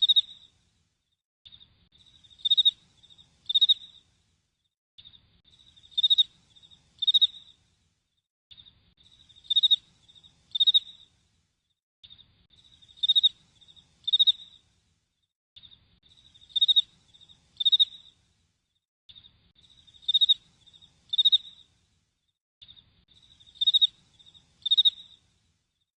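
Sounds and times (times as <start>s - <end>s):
crickets chirping: 2.0s - 4.0s, 5.5s - 7.6s, 9.0s - 11.1s, 12.6s - 14.6s, 16.1s - 18.2s, 19.6s - 21.7s, 23.1s - 25.2s.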